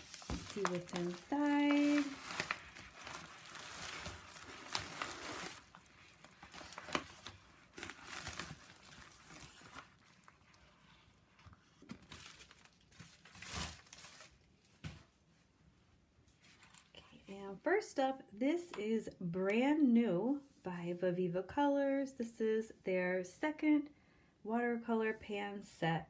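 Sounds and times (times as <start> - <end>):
packaging crinkling and rustling: 0.0 - 15.1, 16.4 - 16.9.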